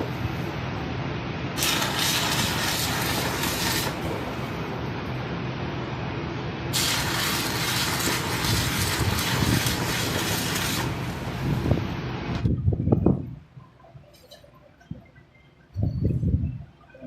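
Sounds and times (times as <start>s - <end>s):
arc welding crackling hiss: 1.5s - 4.7s, 6.7s - 12.0s
welder humming: 1.5s - 5.2s, 6.7s - 12.4s.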